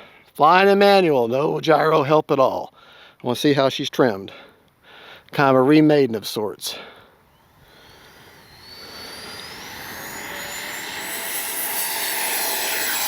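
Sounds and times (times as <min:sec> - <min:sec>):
electric ducted fan whining: 0:07.2 - 0:13.0.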